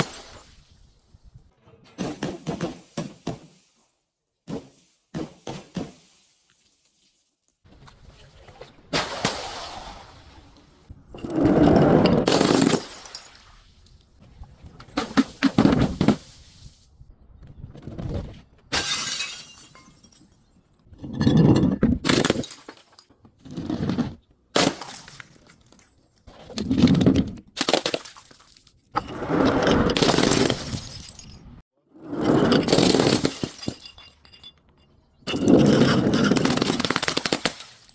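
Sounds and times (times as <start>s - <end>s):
glass bottles crushing and shattering: 11.2s - 13.5s, 18.7s - 23.1s, 26.6s - 31.6s, 32.2s - 37.9s.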